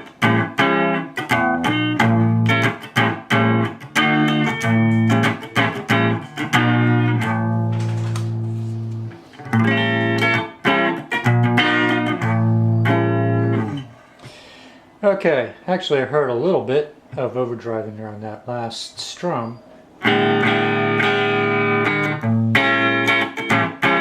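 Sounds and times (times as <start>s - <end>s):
electric guitar strummed chords: 0.0s - 14.0s, 20.0s - 24.0s.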